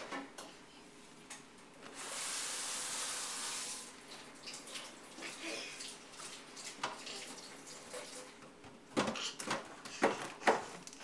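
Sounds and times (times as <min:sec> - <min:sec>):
water running: 0:02.0 - 0:08.4.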